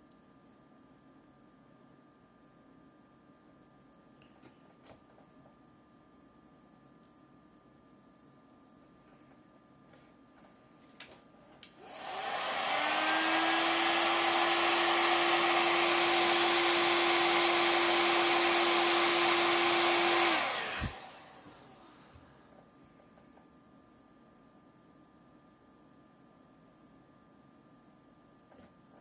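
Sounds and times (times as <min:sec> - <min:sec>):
electric blower running: 0:11.7 - 0:22.4.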